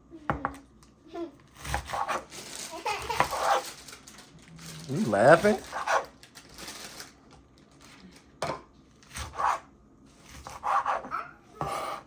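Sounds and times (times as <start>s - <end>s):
knife cutting lettuce: 1.6s - 3.7s, 4.8s - 6.1s.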